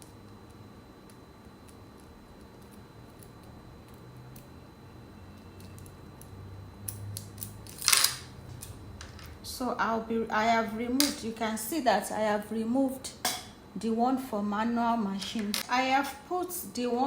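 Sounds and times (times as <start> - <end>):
small metal parts clicking: 6.9 - 9.3.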